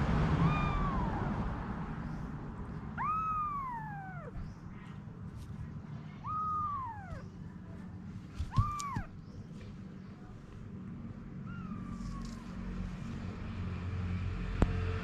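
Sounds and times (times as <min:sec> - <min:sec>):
cat meowing: 0:00.3 - 0:01.5, 0:03.0 - 0:04.6, 0:06.1 - 0:07.4, 0:08.4 - 0:09.2, 0:11.4 - 0:12.6.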